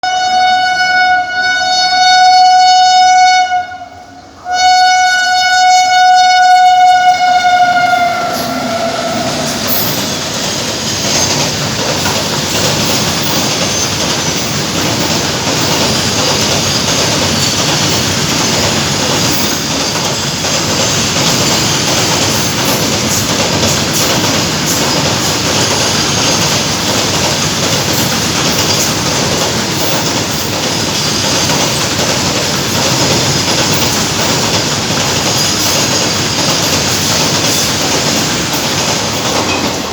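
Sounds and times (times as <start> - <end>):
locomotive horn blasts: 0.0 - 10.2
wheels clacking over rail joints: 6.8 - 39.9.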